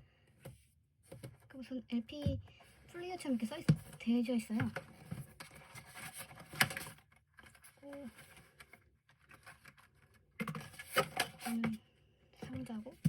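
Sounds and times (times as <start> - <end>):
cardboard and paper rustling: 2.2 - 11.8.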